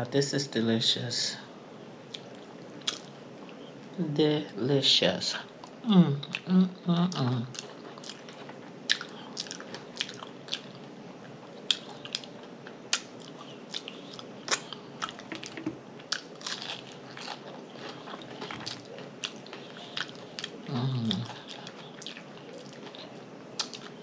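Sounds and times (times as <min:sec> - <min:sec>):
wet lip smacks and mouth clicks: 0:02.1 - 0:03.1
person chewing food: 0:02.1 - 0:03.9, 0:07.1 - 0:24.0.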